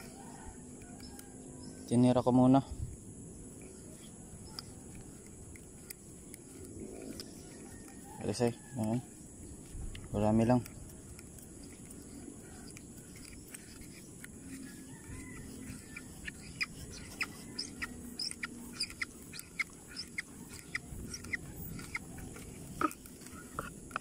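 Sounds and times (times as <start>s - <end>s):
birds chirping: 0.0s - 24.0s.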